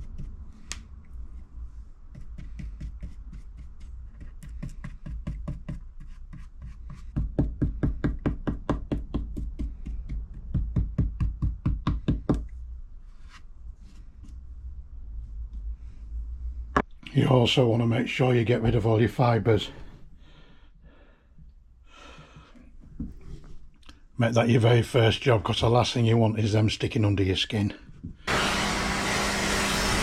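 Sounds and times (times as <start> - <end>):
brush dabbing resin: 0.0 - 7.4.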